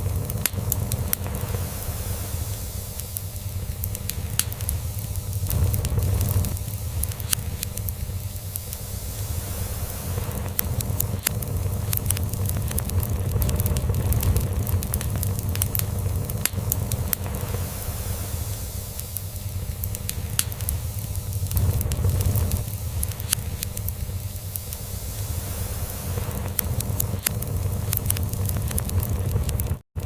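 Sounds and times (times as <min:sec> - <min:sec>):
crackling log fire: 0:00.0 - 0:30.0.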